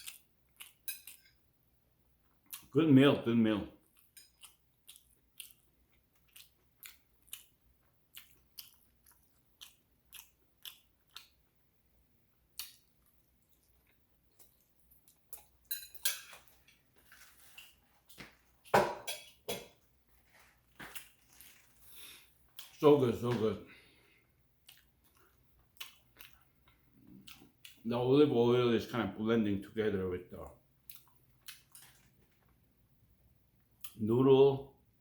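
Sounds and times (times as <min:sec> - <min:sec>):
person chewing food: 0:00.0 - 0:01.5, 0:02.2 - 0:02.7, 0:03.8 - 0:18.7, 0:19.3 - 0:22.8, 0:23.8 - 0:27.8, 0:30.8 - 0:32.8.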